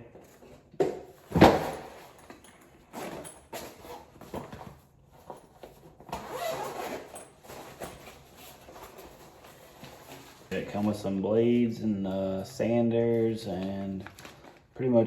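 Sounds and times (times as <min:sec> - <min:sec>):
bag rustling: 0:01.3 - 0:11.0
zipper pulled open: 0:06.1 - 0:07.3.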